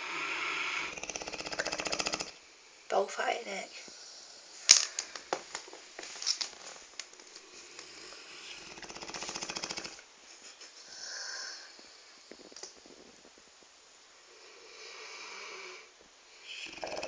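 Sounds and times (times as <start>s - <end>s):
dog snoring: 0.0s - 2.4s, 7.5s - 10.0s, 14.2s - 17.0s.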